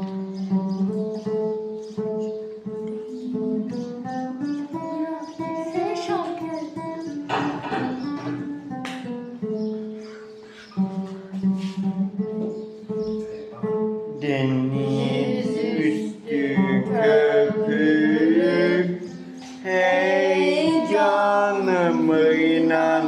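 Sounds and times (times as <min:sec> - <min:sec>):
acoustic guitar folk song: 0:00.0 - 0:23.0.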